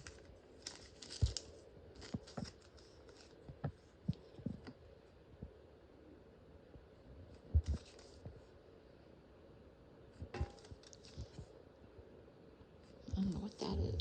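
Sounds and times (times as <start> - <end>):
foil pack crinkling: 0.0 - 3.4.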